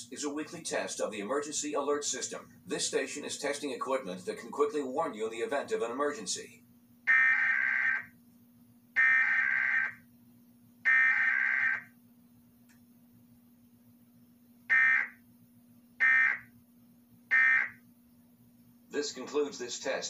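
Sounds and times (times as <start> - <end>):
buzzy warbling data tones: 7.1 - 8.1, 9.0 - 10.0, 10.9 - 11.9, 14.7 - 15.2, 16.0 - 16.5, 17.3 - 17.8.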